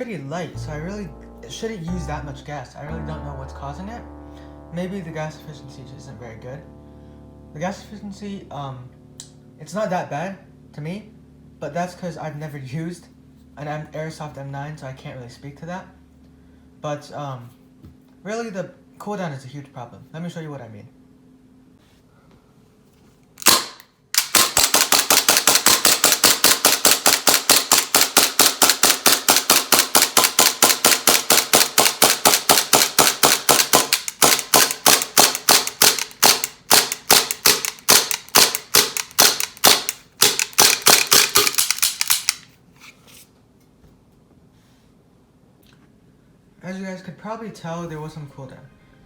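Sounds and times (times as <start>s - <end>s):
airsoft pistol shots: 23.4s - 42.4s.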